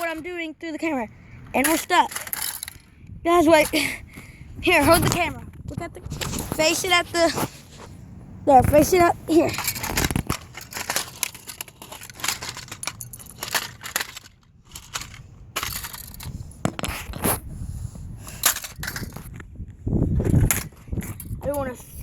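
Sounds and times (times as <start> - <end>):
plastic toy car being smashed: 9.6 - 17.0.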